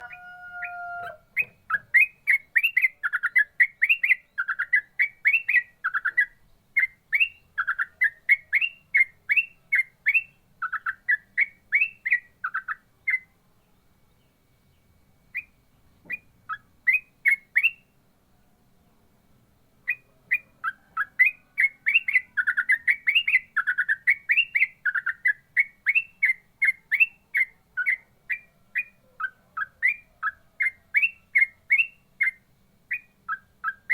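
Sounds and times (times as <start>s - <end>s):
bulbul singing quick chirps: 1.3s - 13.4s, 14.1s - 18.0s, 19.8s - 33.9s.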